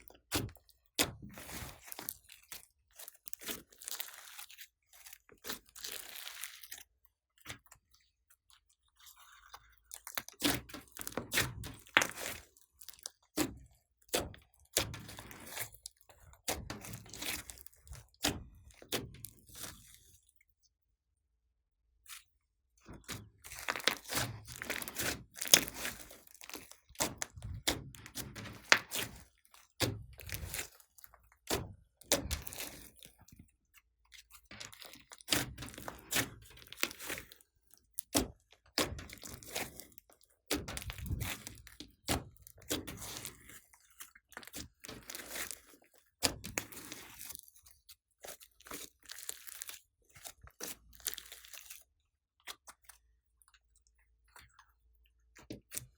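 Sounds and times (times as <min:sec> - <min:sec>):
sticky slime crackles and pops: 0:23.2 - 0:33.3, 0:38.0 - 0:43.4.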